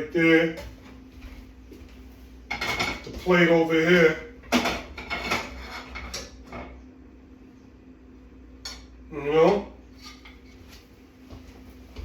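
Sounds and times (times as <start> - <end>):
dishes and utensils clinking: 2.5 - 3.3, 4.5 - 6.8.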